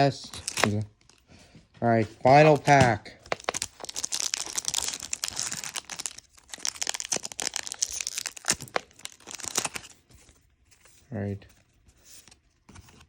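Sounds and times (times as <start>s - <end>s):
foil wrapper crinkling and tearing: 0.0s - 1.2s, 2.2s - 10.1s.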